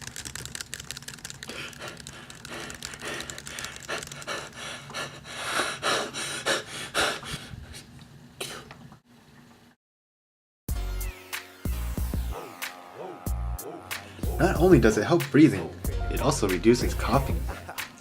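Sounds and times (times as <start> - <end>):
person panting heavily: 1.4 - 7.8, 13.2 - 14.6.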